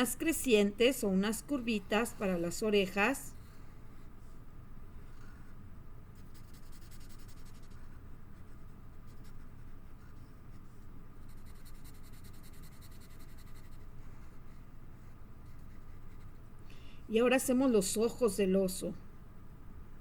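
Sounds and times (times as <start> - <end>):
pen scribbling on paper: 6.2 - 16.4.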